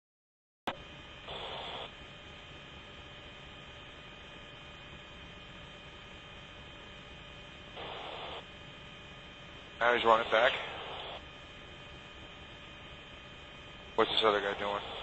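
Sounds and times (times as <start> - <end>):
faint steady tones: 0.7 - 15.0
radio hum and hiss: 0.7 - 15.0
radio static bursts: 1.2 - 1.9, 7.8 - 8.5, 9.8 - 11.2, 14.0 - 15.0.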